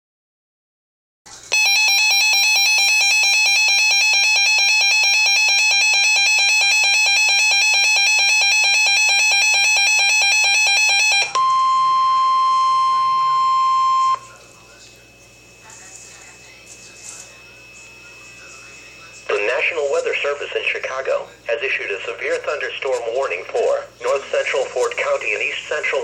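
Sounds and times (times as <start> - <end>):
warbling alarm tone: 1.5 - 14.3
steady single-pitch alarm tone: 1.5 - 14.4.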